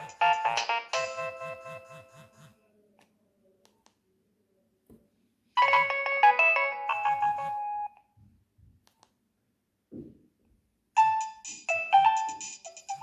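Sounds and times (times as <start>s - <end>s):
mobile phone ringtone: 0.0s - 2.4s, 5.6s - 8.0s, 11.0s - 13.0s.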